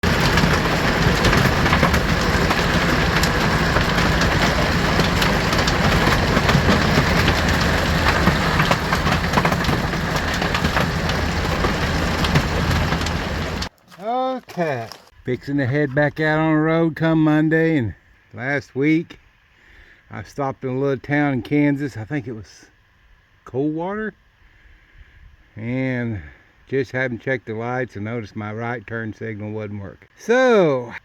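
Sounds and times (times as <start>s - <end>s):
vehicle engine and road rumble: 0.0s - 13.8s
clicks and rattles: 0.0s - 13.9s.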